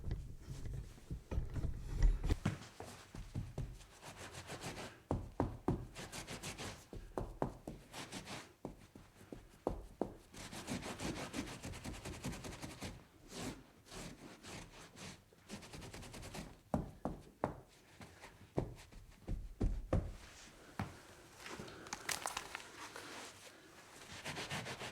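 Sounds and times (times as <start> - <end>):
scrubbing on a tabletop: 21.3 - 24.9.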